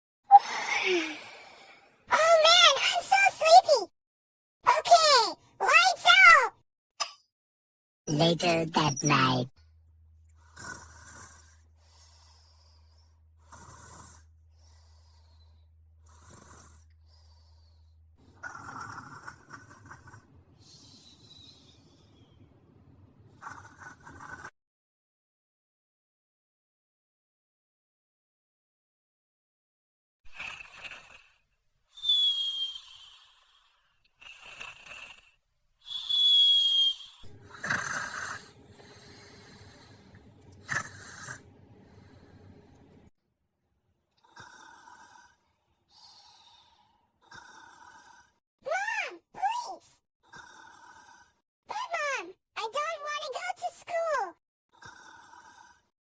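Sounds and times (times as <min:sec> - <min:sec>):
person snoring: 0:00.3 - 0:01.9, 0:10.4 - 0:12.5, 0:37.3 - 0:41.4, 0:46.4 - 0:48.4, 0:50.3 - 0:51.4, 0:54.8 - 0:55.9
child snoring: 0:00.3 - 0:03.8, 0:04.7 - 0:06.5, 0:10.5 - 0:12.5, 0:13.4 - 0:15.2, 0:16.1 - 0:17.3, 0:18.3 - 0:21.2, 0:23.4 - 0:24.5, 0:30.3 - 0:31.4, 0:34.3 - 0:35.4, 0:37.3 - 0:41.5, 0:44.2 - 0:45.4, 0:46.2 - 0:52.2, 0:54.0 - 0:55.9
steady low hum: 0:37.3 - 0:43.1.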